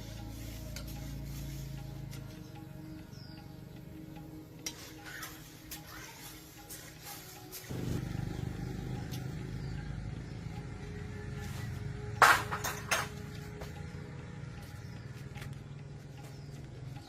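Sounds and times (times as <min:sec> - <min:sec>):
low motor hum: 0:07.7 - 0:12.2.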